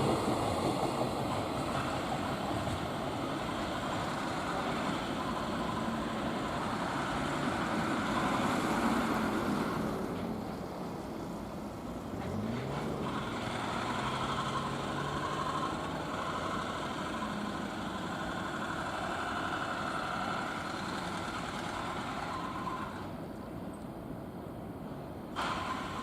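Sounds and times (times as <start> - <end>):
freight train running: 0.0 - 26.0.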